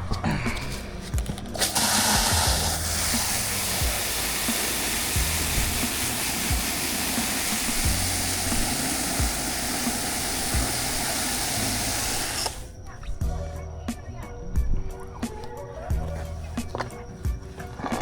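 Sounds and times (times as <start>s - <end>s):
background music with low beat: 0.0s - 18.0s
hose water running: 0.6s - 12.9s.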